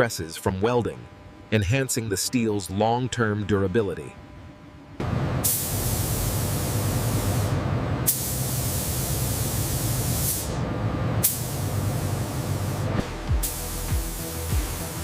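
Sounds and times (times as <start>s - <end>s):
steady low rumble: 4.4s - 15.0s
loud hissing jet: 5.4s - 10.6s, 11.2s - 15.0s.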